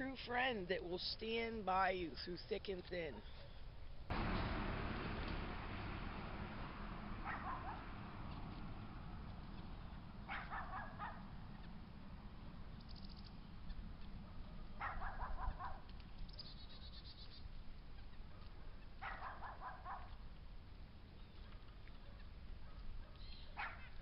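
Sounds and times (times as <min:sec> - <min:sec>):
animal calling: 0:07.2 - 0:08.0, 0:10.2 - 0:11.6, 0:12.8 - 0:17.4, 0:18.0 - 0:20.1.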